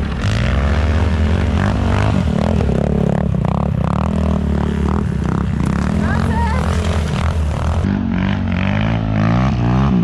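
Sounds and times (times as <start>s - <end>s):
snowmobile engine running: 0.0s - 10.0s
track and skis scraping snow: 4.4s - 7.9s.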